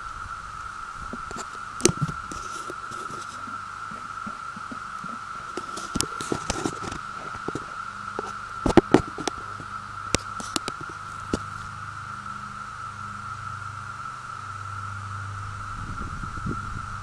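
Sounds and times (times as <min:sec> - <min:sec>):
cicadas droning: 0:00.0 - 0:17.0.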